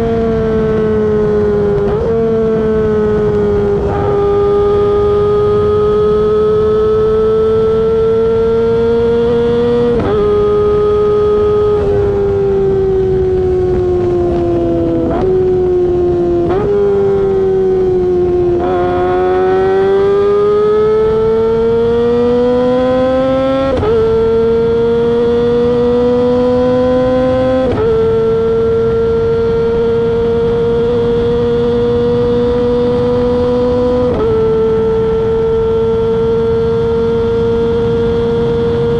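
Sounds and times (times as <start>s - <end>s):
motorcycle engine revving: 0.0s - 38.9s.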